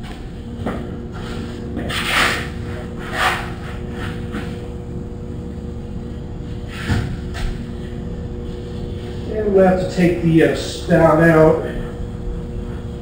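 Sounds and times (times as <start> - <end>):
steady machine hum: 0.0 - 13.0
short scraping noises: 1.2 - 4.4.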